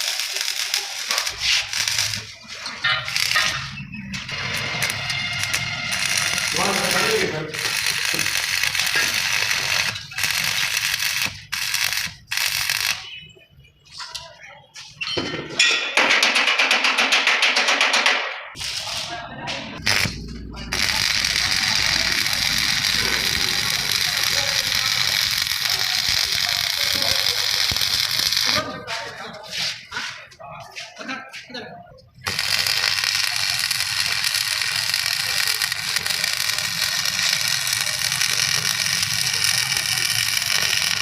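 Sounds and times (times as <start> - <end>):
welding arc crackling and hissing: 0.0 - 13.1, 18.6 - 28.7, 32.2 - 41.0.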